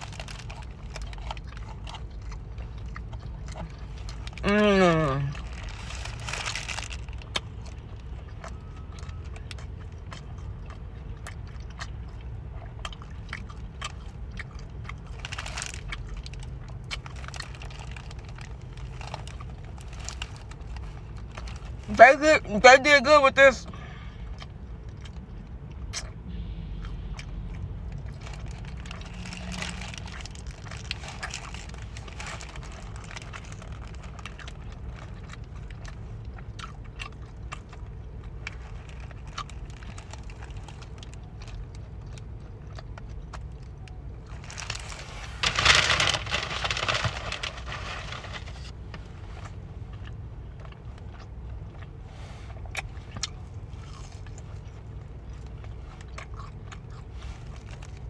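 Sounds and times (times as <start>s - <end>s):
steady low hum: 0.0s - 58.0s
paper wrapper crinkling: 44.3s - 48.8s
paper wrapper rustling: 44.4s - 48.8s.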